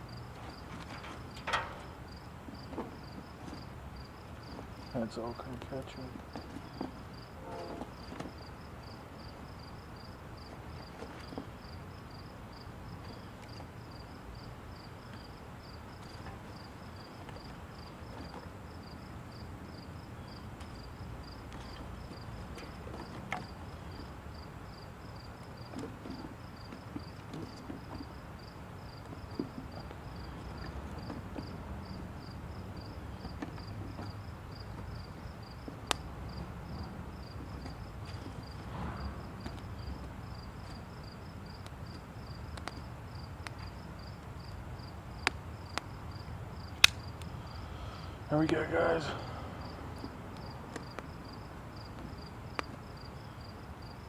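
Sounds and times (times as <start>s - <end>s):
low fire rumble: 0.0s - 53.1s
campfire crackling and popping: 38.5s - 47.4s, 50.0s - 52.8s.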